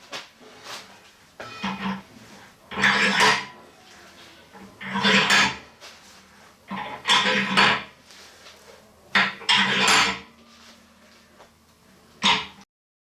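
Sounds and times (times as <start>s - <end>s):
metal clattering and scraping: 1.4s - 3.6s, 4.6s - 5.7s, 6.7s - 7.9s, 9.2s - 10.3s.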